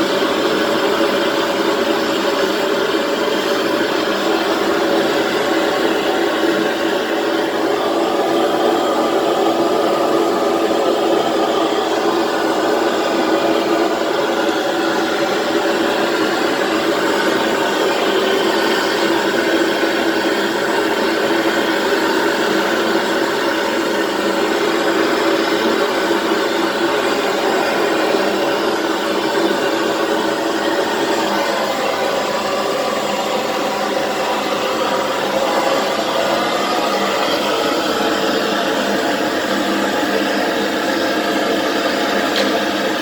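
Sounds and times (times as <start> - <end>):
torch flame hissing: 21.7 - 43.0.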